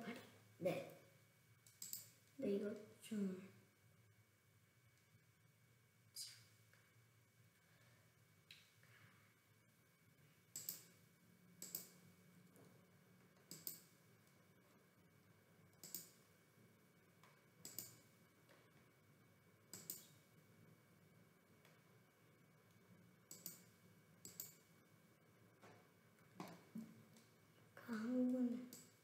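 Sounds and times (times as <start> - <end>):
computer mouse clicking: 1.6 - 2.2, 10.6 - 11.0, 11.6 - 12.0, 13.4 - 14.0, 15.8 - 16.3, 17.2 - 18.1, 19.7 - 20.2, 23.3 - 24.6, 28.6 - 29.0.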